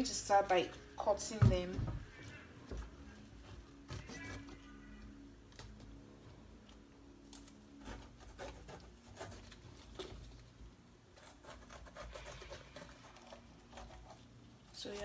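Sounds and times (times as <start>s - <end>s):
knife cutting peppers: 7.3s - 10.4s, 11.1s - 15.0s.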